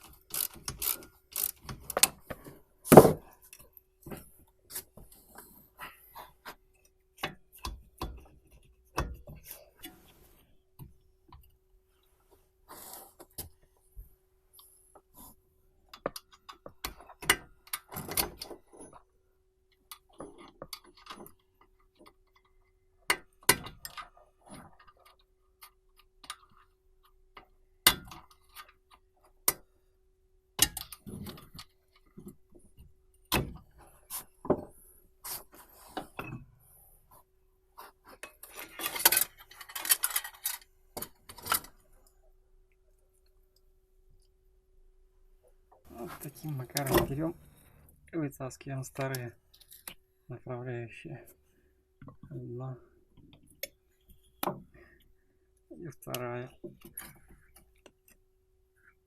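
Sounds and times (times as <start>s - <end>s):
metallic clicks and knocks of tools: 0.0s - 2.4s, 30.6s - 32.3s, 38.2s - 41.8s.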